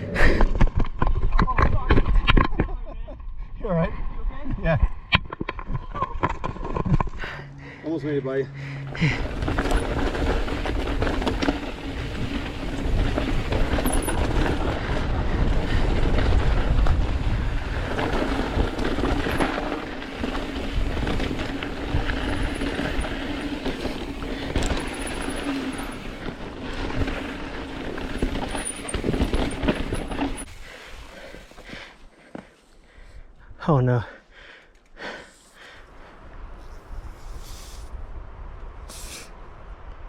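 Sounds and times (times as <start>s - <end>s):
bike rattling: 5.2s - 33.0s
tyres rolling over rock: 9.0s - 30.6s
wind buffeting microphone: 9.0s - 30.7s.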